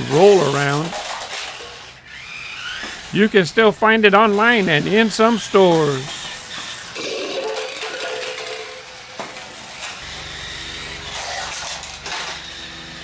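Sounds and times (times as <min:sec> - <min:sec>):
toy motor hum: 0:00.0 - 0:03.6, 0:04.2 - 0:13.0
plastic clattering: 0:00.1 - 0:01.9, 0:06.1 - 0:10.0, 0:11.1 - 0:12.5.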